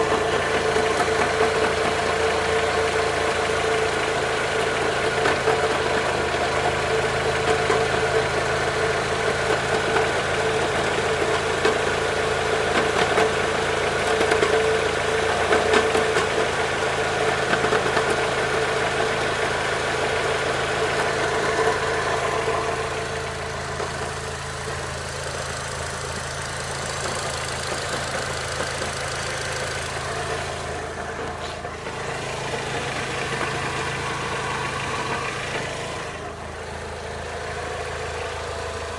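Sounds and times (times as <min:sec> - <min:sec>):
car engine idling: 0:00.0 - 0:38.9
gearbox bearing knocking: 0:25.2 - 0:31.4.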